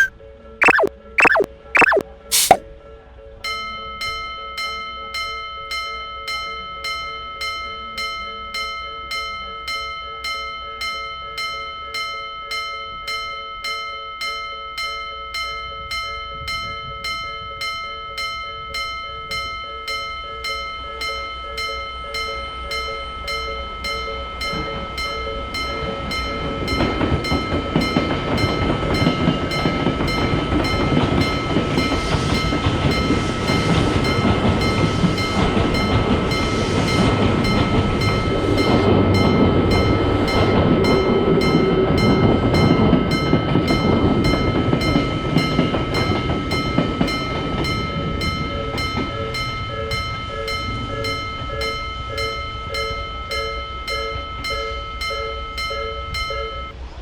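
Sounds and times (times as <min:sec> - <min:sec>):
level crossing bell ringing: 0:00.0 - 0:02.6, 0:46.4 - 0:56.7
passing train rumble: 0:23.7 - 0:57.0.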